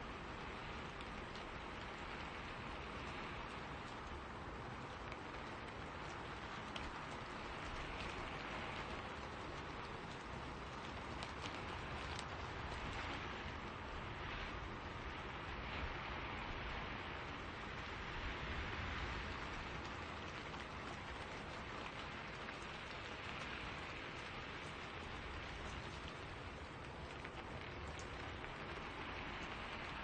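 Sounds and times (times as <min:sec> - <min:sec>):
rain falling in forest: 0:00.0 - 0:30.0
raindrops ticking: 0:00.0 - 0:30.0
wind in trees: 0:00.0 - 0:30.0.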